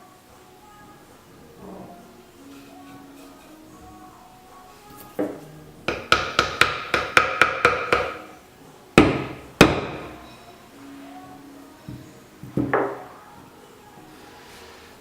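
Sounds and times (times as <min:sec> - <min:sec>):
hammer ringing taps: 0:05.9 - 0:08.3.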